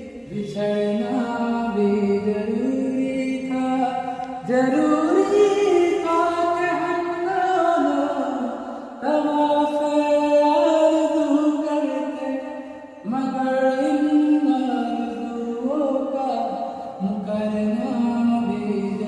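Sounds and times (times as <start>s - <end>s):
man singing slow song: 0.0s - 19.0s.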